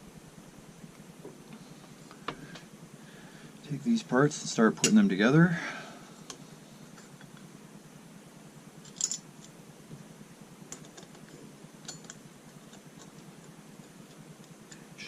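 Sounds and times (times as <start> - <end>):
small metal parts clicking: 8.8 - 9.5, 10.7 - 15.0.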